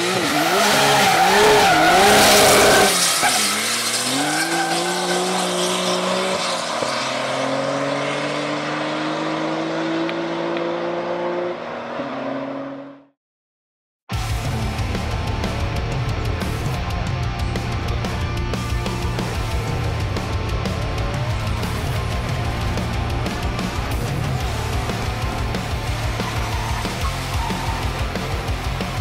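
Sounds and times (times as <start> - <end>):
tyre squeal: 0.0 - 7.2, 26.1 - 28.2
turbocharged engine revving: 0.0 - 13.1, 14.4 - 29.0.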